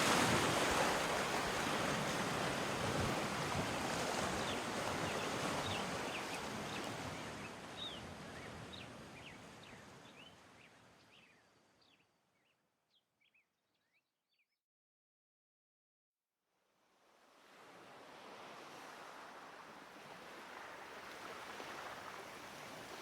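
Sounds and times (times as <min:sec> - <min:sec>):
ocean surf rushing: 0:00.0 - 0:07.2.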